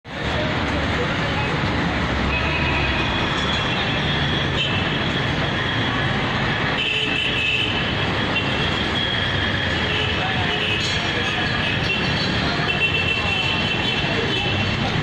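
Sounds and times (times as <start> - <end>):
dense traffic noise: 0.0 - 15.0.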